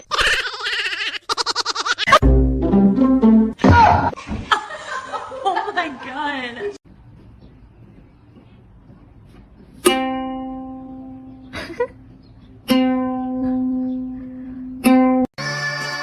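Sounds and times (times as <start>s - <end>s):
plucked string note ringing: 2.2s - 3.6s, 9.8s - 11.5s, 12.6s - 16.0s.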